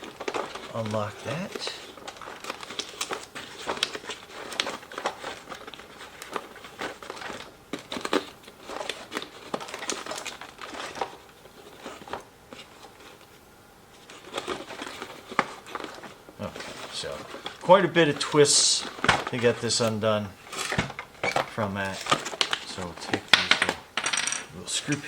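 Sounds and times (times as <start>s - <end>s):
plastic fasteners clicking: 0.0s - 12.2s, 14.1s - 25.0s
plastic packaging crinkling: 0.0s - 25.0s.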